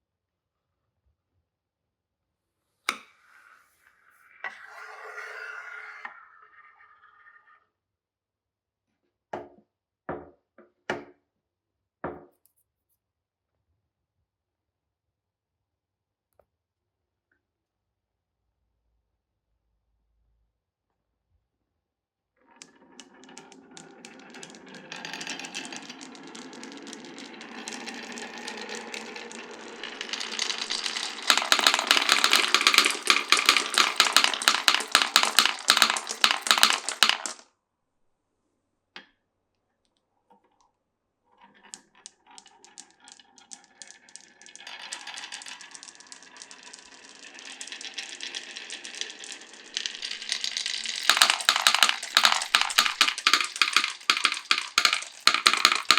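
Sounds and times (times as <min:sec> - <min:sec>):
marbles rolling on wooden track: 0:04.3 - 0:07.4, 0:22.5 - 0:37.4, 0:41.4 - 0:55.9.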